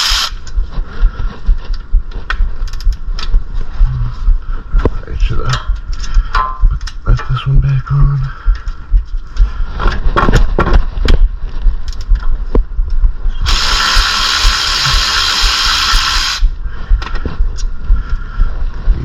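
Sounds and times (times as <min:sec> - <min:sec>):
metal tool clicks and knocks: 0:02.3 - 0:03.3, 0:05.5 - 0:07.3
power tool running: 0:13.5 - 0:16.5.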